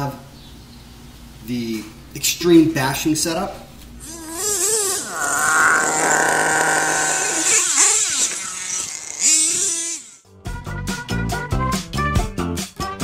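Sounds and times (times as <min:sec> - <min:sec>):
small nitro engine revving: 0:04.0 - 0:10.3.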